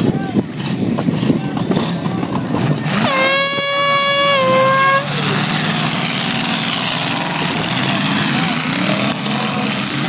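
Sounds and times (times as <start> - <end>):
car engines running: 0.0 - 10.0
horn blast: 3.0 - 5.4.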